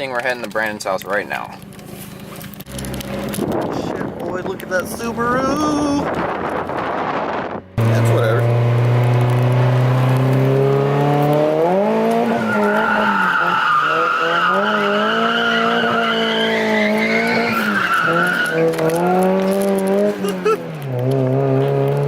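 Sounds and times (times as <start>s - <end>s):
car engine at high revs: 0.6s - 22.0s
tyres squealing: 11.7s - 20.8s.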